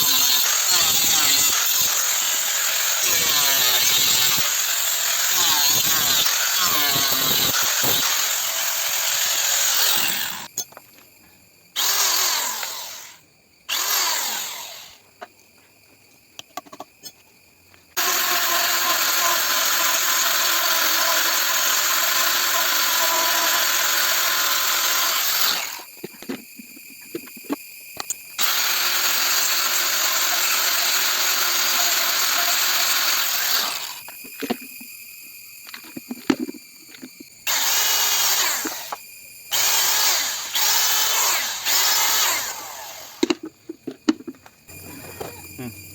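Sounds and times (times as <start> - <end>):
power drill running: 0.0 - 10.5, 11.8 - 15.0, 18.0 - 25.9, 28.4 - 34.0, 37.4 - 43.3.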